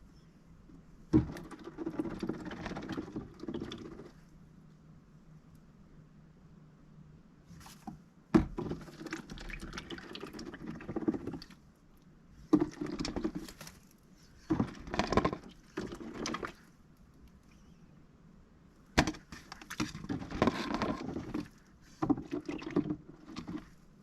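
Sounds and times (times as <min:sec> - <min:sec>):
duck dabbling and splashing water: 0:08.6 - 0:11.6, 0:19.4 - 0:23.7.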